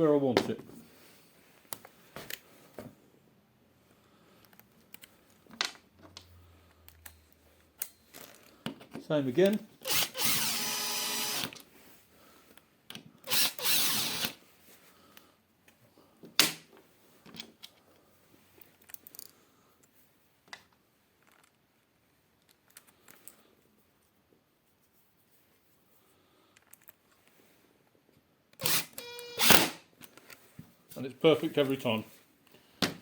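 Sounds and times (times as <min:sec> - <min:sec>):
cordless screwdriver motor: 0:09.8 - 0:11.6, 0:13.3 - 0:14.4, 0:28.6 - 0:29.8.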